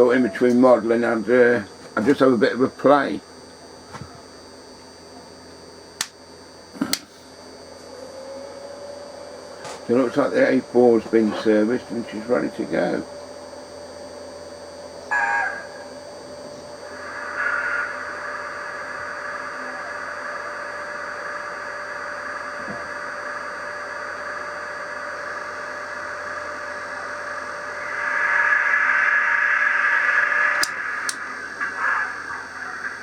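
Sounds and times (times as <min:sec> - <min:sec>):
model train motor whirring: 0:27.8 - 0:33.0
sharp click: 0:30.5 - 0:31.2.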